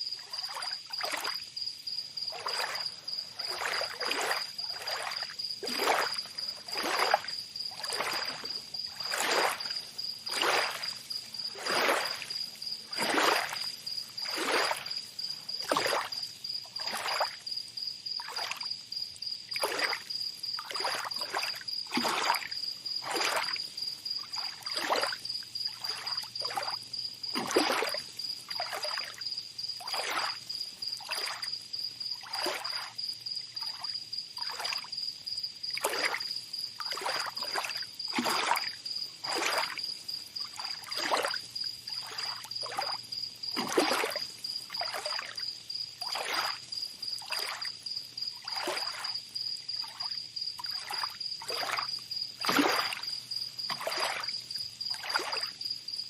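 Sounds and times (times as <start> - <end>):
insect trilling: 0.0 - 34.8
small waves lapping at shore: 0.1 - 17.6, 18.2 - 18.7, 19.4 - 34.9, 35.6 - 55.6.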